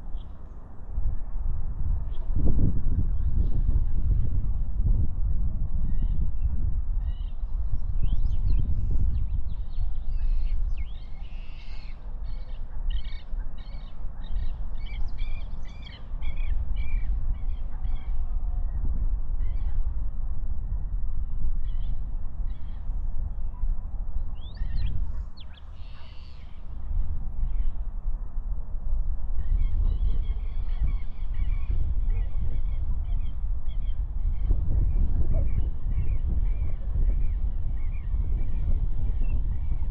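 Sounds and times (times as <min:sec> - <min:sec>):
birds chirping and trilling: 0:10.2 - 0:18.1, 0:24.4 - 0:26.6.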